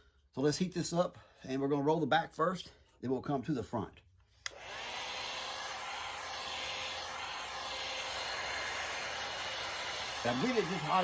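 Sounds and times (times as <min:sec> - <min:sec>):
heat gun switch click: 0:04.4 - 0:04.6
heat gun blowing hiss: 0:04.5 - 0:11.0.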